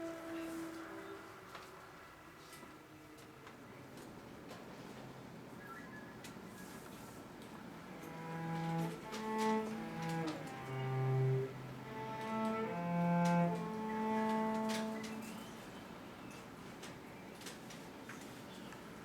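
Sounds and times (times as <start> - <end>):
cello long bowed notes: 0.0 - 1.7, 7.8 - 15.6.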